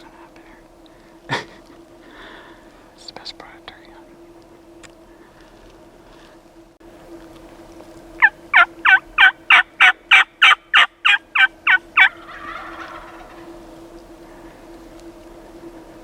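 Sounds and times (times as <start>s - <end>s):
turkey yelping: 8.2s - 13.5s.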